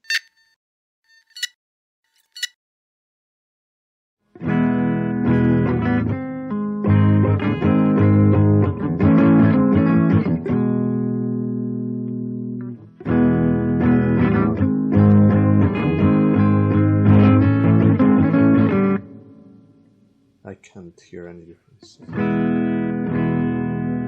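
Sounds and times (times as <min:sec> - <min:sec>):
electric guitar notes and chords: 0:04.3 - 0:19.9, 0:22.0 - 0:24.0.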